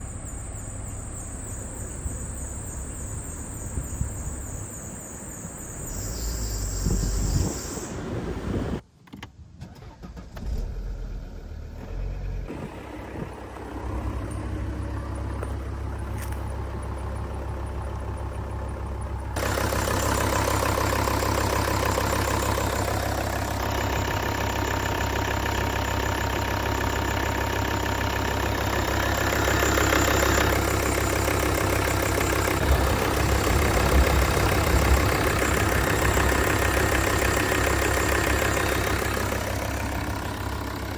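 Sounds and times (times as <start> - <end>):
diesel engine idling: 0.0 - 8.8, 10.8 - 40.9
drive belt pulley noise: 19.4 - 40.9.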